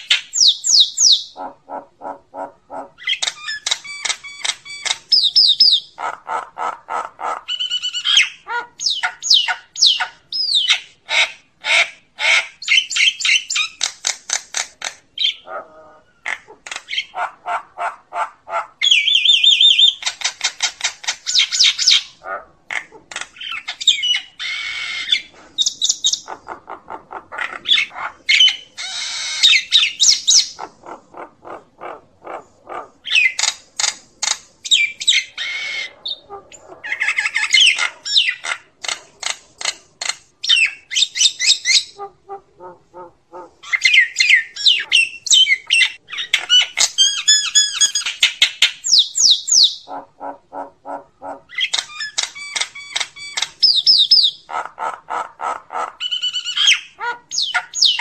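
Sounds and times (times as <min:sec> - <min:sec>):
myna squawking and whistling: 0:00.0 - 0:06.0, 0:27.4 - 0:30.7, 0:34.7 - 0:38.7, 0:43.6 - 0:49.9, 0:51.3 - 0:54.5, 0:55.8 - 0:58.0.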